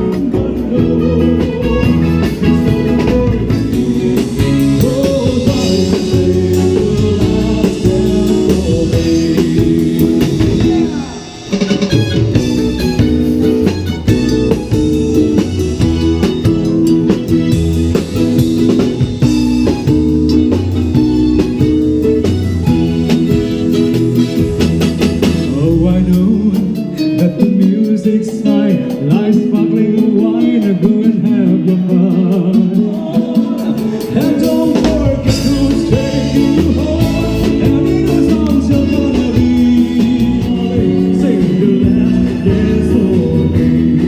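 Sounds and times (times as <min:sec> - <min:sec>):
guitar-led song with singing: 0:00.0 - 0:44.0.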